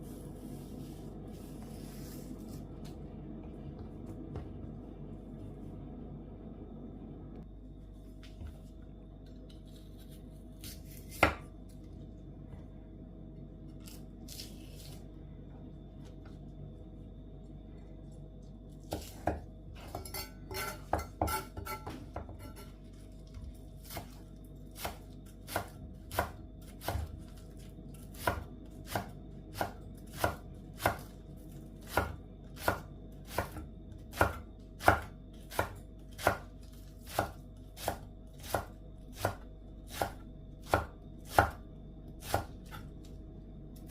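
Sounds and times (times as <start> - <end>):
knife chopping on cutting board: 9.7 - 11.4, 18.9 - 22.8, 24.8 - 27.3, 28.1 - 31.1, 31.8 - 41.6, 42.2 - 42.8.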